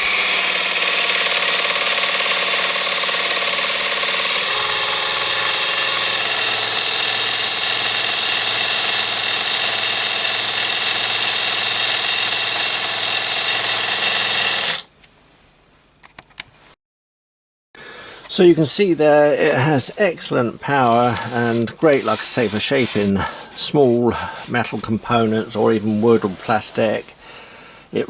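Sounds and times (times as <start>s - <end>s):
belt sander grinding metal: 0.0s - 14.9s, 19.9s - 27.0s.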